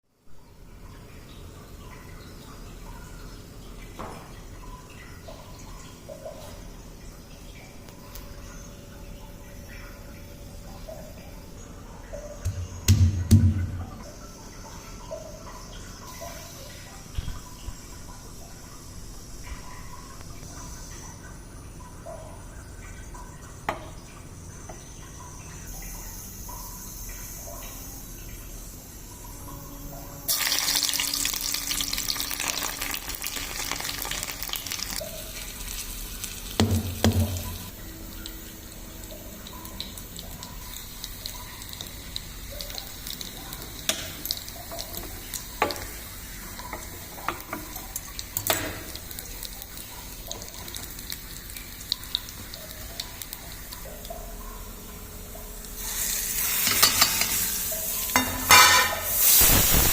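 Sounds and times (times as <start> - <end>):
garlic sizzling in oil: 30.3 - 53.8, 55.7 - 59.9.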